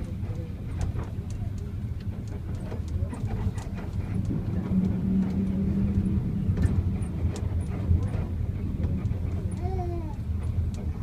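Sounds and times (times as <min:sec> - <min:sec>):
bus engine rumble: 0:00.0 - 0:11.0.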